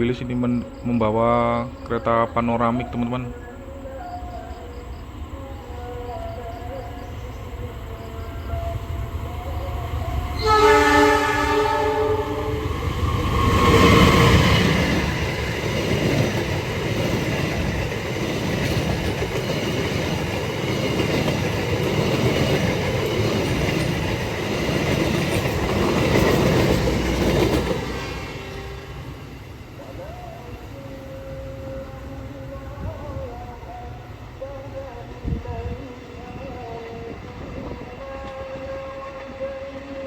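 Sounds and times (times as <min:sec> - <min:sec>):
train horn: 0:05.6 - 0:14.7, 0:27.8 - 0:29.4
train clattering over rail joints: 0:13.8 - 0:28.4.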